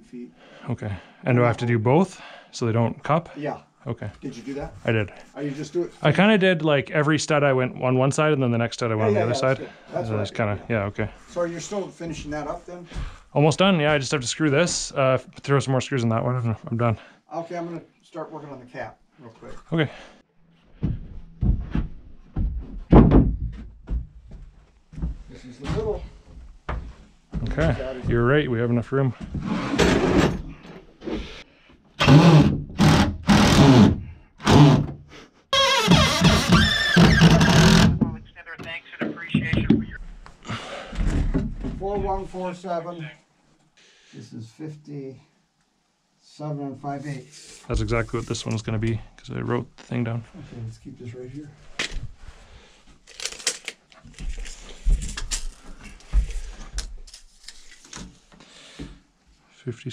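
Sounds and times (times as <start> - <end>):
lumber knocking and clattering: 20.7 - 28.4, 40.9 - 42.4.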